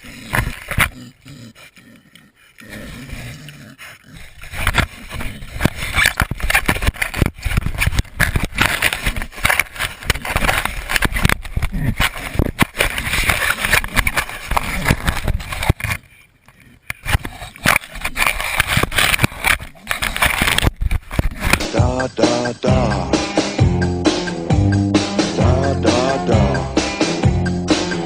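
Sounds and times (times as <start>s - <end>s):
scraping and knocking on camera: 0.2s - 1.0s, 4.2s - 21.7s.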